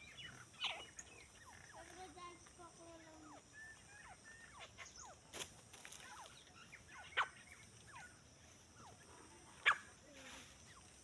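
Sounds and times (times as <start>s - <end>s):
bird chirping: 0.0s - 5.2s.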